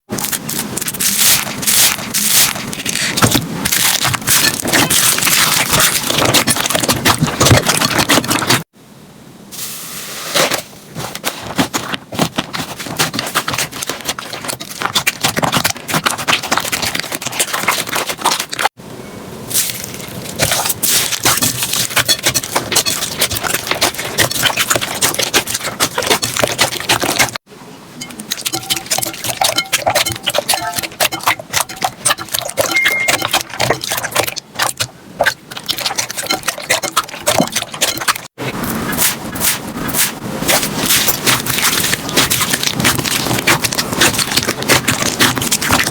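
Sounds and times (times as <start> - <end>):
slime crackling and popping: 0.0 - 8.7, 19.5 - 27.4, 38.9 - 45.9.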